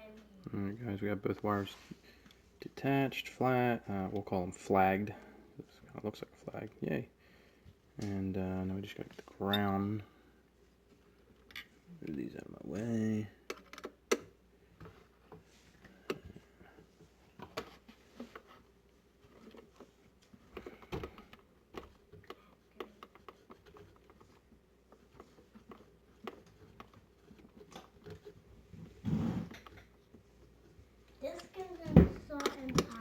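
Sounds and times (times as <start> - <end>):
hands handling electrical wires: 11.4 - 31.6.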